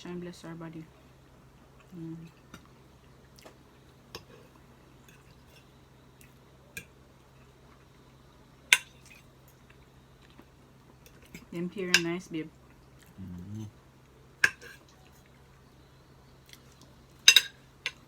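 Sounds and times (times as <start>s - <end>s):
faint steady hum: 0.0s - 18.0s
cutlery clicking on a plate: 17.3s - 18.0s.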